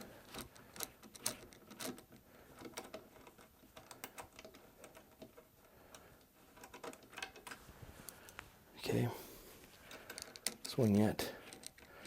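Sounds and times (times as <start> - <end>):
small metal hardware clicks: 0.0 - 5.4.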